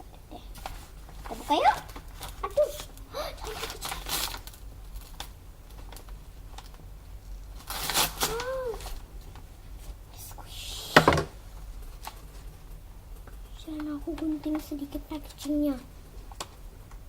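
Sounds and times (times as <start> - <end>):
plastic rustle: 0.4 - 10.0, 11.2 - 16.7
plastic packaging crinkling: 0.6 - 9.1.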